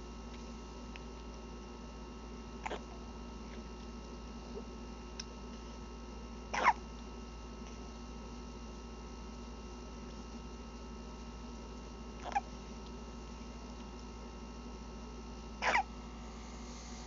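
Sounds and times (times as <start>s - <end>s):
faint steady hum: 0.0s - 17.0s
baby hiccuping: 15.6s - 15.8s.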